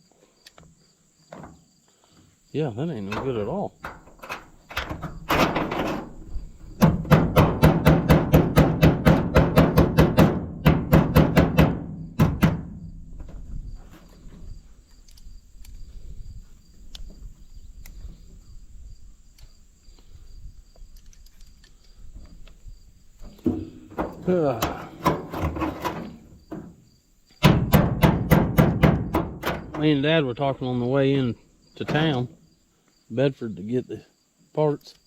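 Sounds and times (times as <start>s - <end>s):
rapid sharp knocks: 6.8s - 12.9s, 27.4s - 29.8s
high insect drone: 11.2s - 35.0s.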